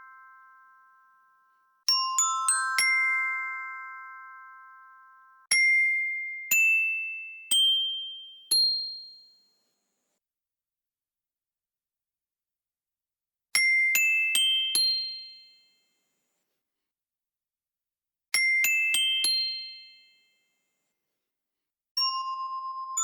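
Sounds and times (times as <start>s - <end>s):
low wavering chime tone: 0.0s - 5.5s
glockenspiel rising chime: 2.0s - 5.5s.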